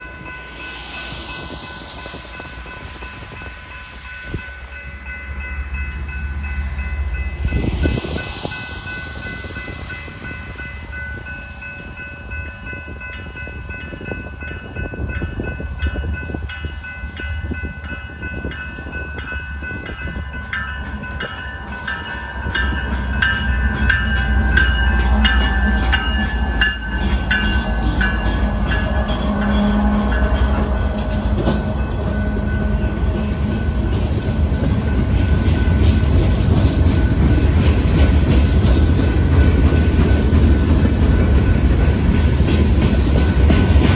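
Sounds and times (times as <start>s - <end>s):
locomotive rumble: 14.0s - 43.9s
train horn: 28.1s - 33.6s.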